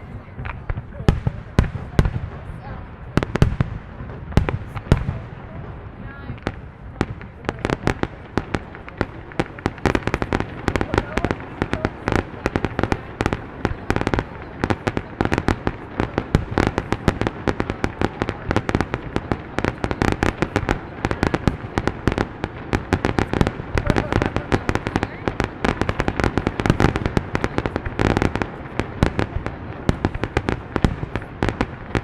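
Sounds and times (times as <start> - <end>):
fireworks bangs and crackles: 0.0 - 32.0.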